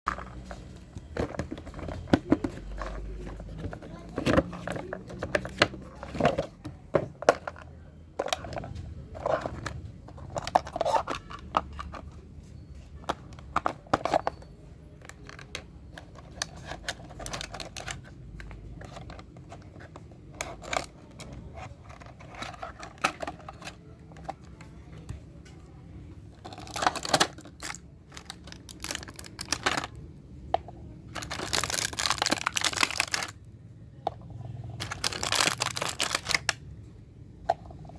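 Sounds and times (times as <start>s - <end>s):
plastic toys clicking and tapping: 0.1s - 25.6s, 26.3s - 33.4s, 34.1s - 36.6s
packaging crinkling and tearing: 26.6s - 29.9s, 31.2s - 33.4s, 34.8s - 36.6s.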